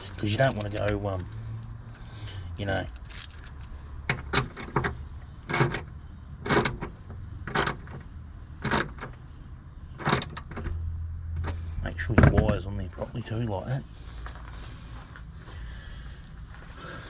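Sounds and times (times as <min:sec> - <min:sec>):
metal parts clinking: 0:00.0 - 0:04.8, 0:12.2 - 0:12.7.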